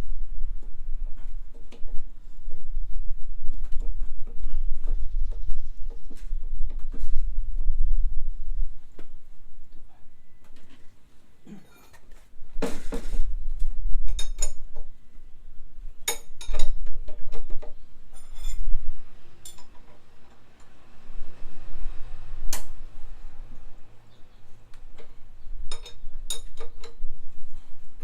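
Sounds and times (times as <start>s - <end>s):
metal tools clinking: 18.1s - 18.7s.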